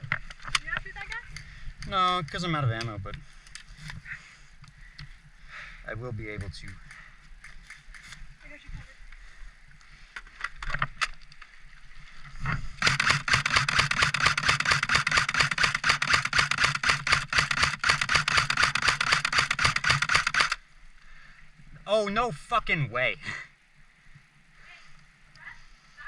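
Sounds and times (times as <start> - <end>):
airsoft gun firing: 12.8 - 20.6.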